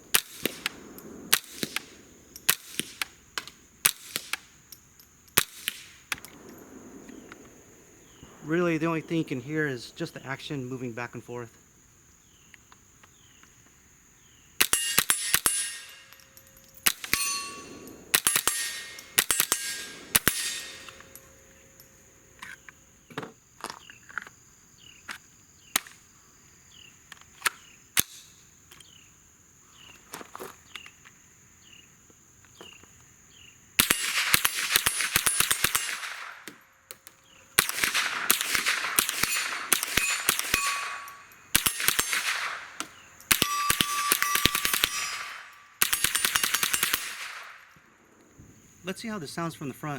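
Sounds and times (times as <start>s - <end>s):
suppressed rifle firing: 0.0s - 4.5s, 5.4s - 10.7s, 14.6s - 22.0s, 37.6s - 47.6s
metallic ringing: 14.6s - 22.1s, 39.2s - 42.2s, 43.2s - 47.0s.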